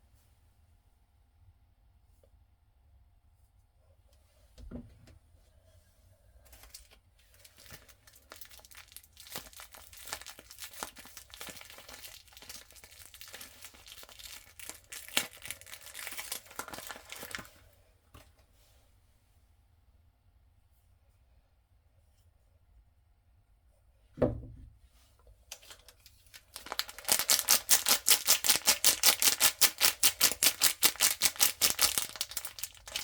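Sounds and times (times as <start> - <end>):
wrapper tearing and crinkling: 6.5 - 17.5, 25.5 - 33.0
soft knock: 24.2 - 24.7.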